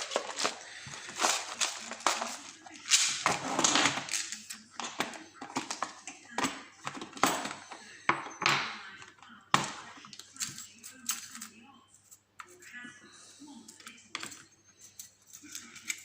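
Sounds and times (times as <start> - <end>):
small metal tools clicking and rattling: 10.3 - 12.1.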